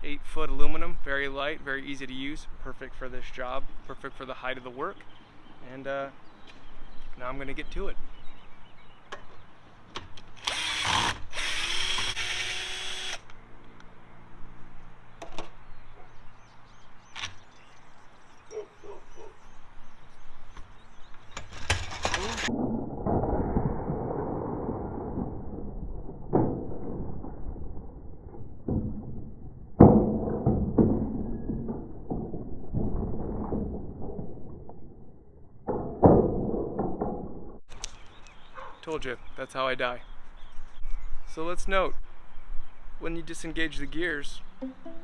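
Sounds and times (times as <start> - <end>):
power drill running: 10.4 - 13.2.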